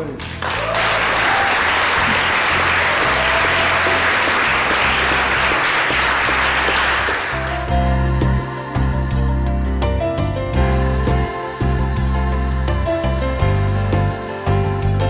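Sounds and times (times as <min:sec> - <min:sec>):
music: 0:00.0 - 0:15.0
audience applauding: 0:00.1 - 0:07.7.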